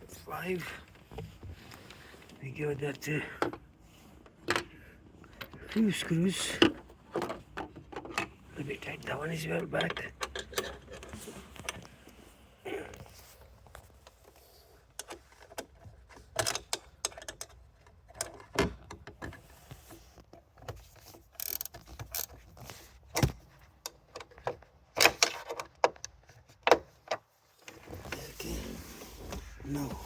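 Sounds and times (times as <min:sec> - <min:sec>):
hand tools clicking and rattling: 0:21.3 - 0:22.4.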